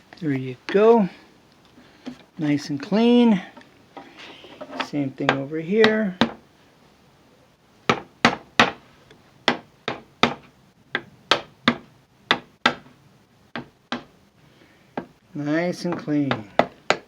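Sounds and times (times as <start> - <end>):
hammer tapping on wood: 9.5 - 12.9, 13.6 - 14.1, 15.9 - 17.0.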